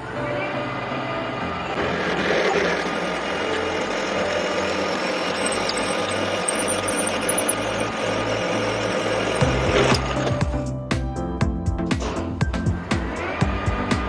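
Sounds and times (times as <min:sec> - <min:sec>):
lathe humming and cutting: 0:00.7 - 0:10.3.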